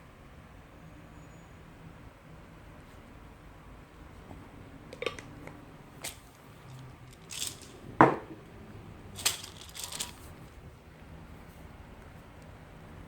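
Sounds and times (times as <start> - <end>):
objects clicking and knocking: 5.0 - 8.4, 9.2 - 10.3.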